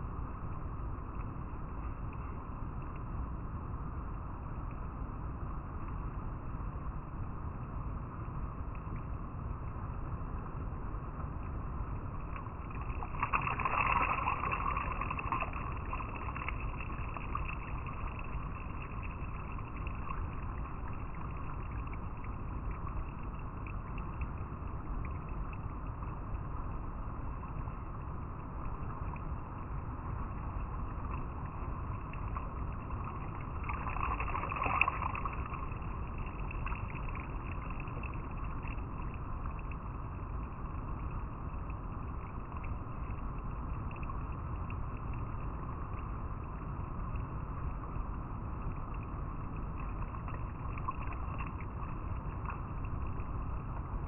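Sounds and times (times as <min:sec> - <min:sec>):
river water flowing over rocks: 0:11.4 - 0:54.0.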